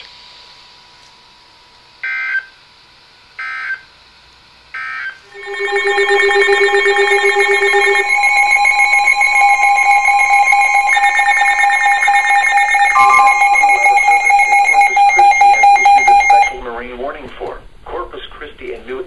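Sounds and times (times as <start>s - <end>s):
fast pulsing beep: 5.3s - 16.6s
weather radio alert tones: 12.7s - 16.6s.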